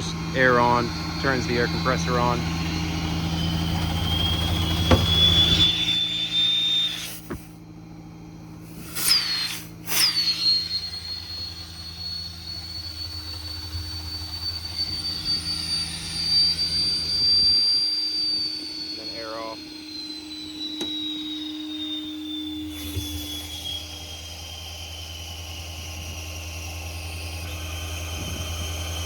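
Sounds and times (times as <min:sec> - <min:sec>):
diesel engine idling: 0:00.0 - 0:08.8
air compressor whine: 0:00.0 - 0:29.0.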